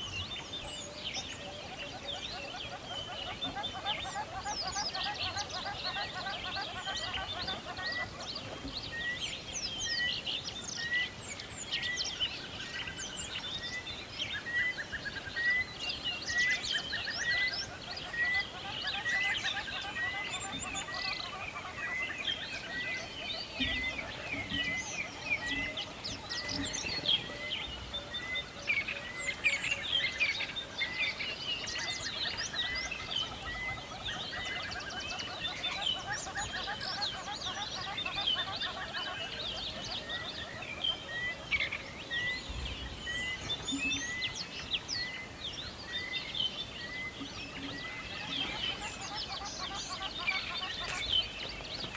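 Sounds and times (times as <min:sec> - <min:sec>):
songbirds chirping and trilling: 0:00.0 - 0:51.9.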